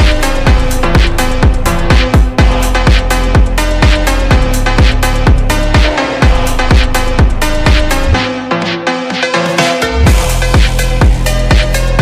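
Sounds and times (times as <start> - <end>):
electronic dance music: 0.0 - 12.0.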